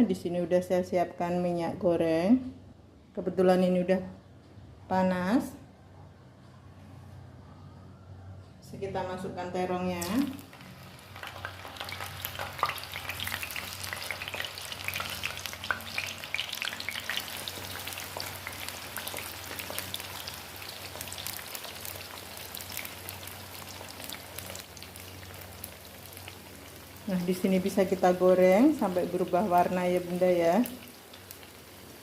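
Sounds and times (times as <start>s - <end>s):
eggplant sizzling in oil: 9.9s - 32.0s.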